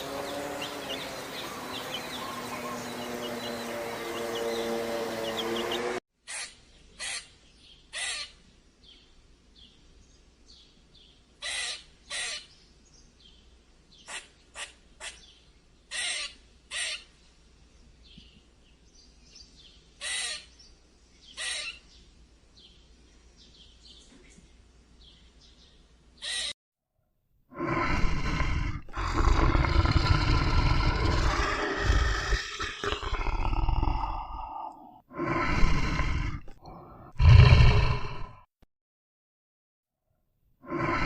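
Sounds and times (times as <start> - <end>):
loud animal sound: 0.0 - 7.3, 20.0 - 20.6, 26.2 - 26.6, 27.5 - 38.5, 40.6 - 41.0
bird harsh calls: 0.0 - 9.0, 11.0 - 17.3, 19.4 - 22.1, 26.2 - 26.6.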